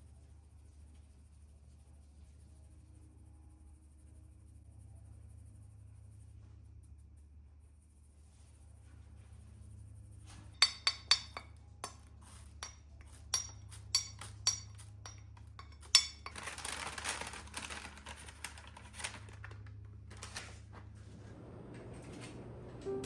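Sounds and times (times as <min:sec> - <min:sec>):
dishes and cutlery clinking: 0:10.3 - 0:17.7.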